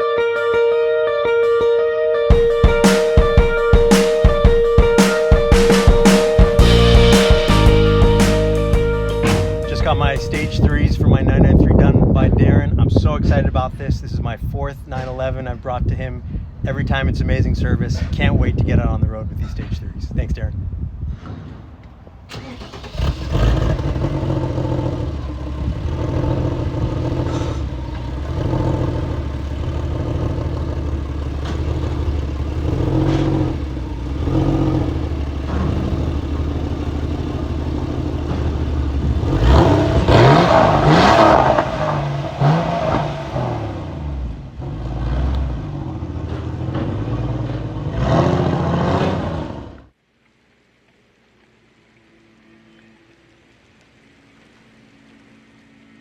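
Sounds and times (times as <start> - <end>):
car engine revving: 2.3 - 10.7, 22.3 - 49.9.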